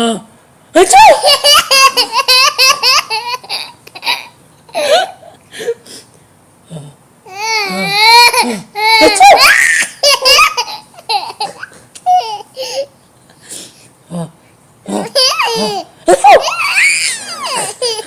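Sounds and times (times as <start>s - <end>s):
young child laughing: 1.0s - 5.3s, 7.8s - 12.9s, 15.0s - 18.0s.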